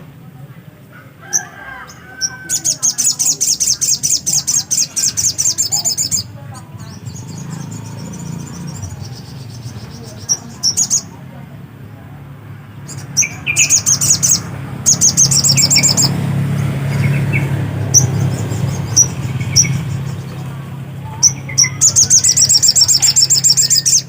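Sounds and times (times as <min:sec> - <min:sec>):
bird chirping rapidly: 0:01.3 - 0:11.2, 0:12.7 - 0:24.0.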